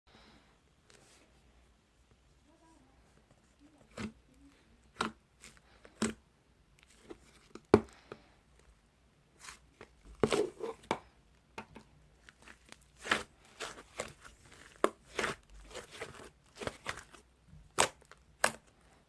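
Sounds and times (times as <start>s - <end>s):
slime squished by hand: 12.1s - 18.7s.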